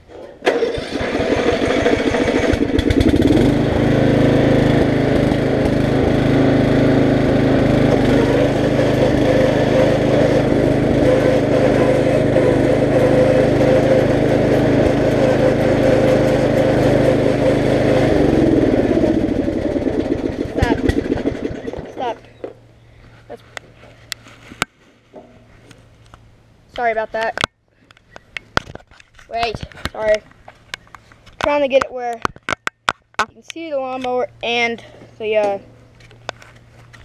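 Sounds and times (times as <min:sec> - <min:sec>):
riding lawn mower engine revving: 0:00.0 - 0:26.8.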